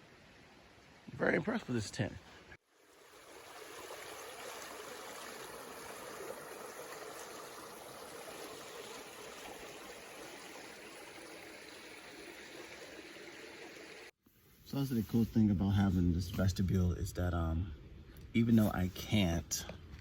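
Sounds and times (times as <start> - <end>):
stream rushing: 2.8 - 14.1.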